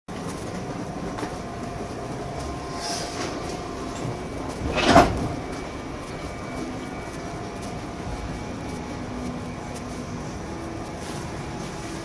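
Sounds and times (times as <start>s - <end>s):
train rumbling: 0.1s - 12.0s.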